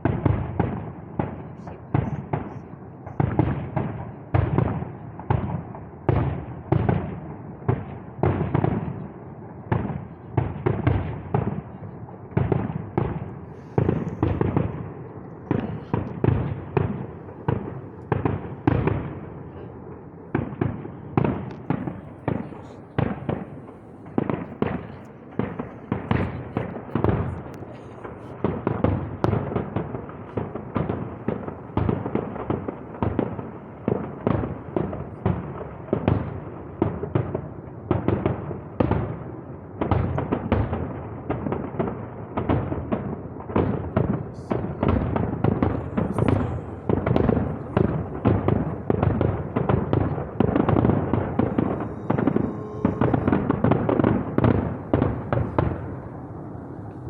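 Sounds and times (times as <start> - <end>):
fireworks bangs: 0.0 - 57.0.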